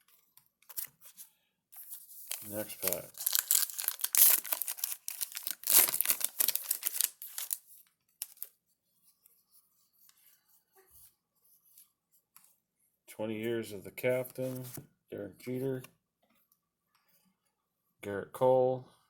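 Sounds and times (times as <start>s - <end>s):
card pack wrapper tearing: 1.8s - 7.6s, 8.2s - 8.5s.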